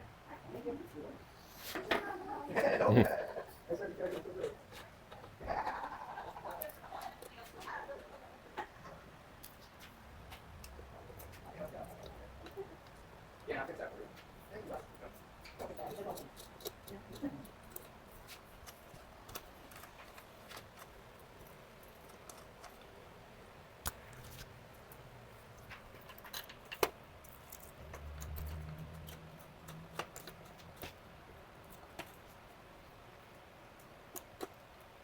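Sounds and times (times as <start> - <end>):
small clicks and taps: 25.6 - 31.0.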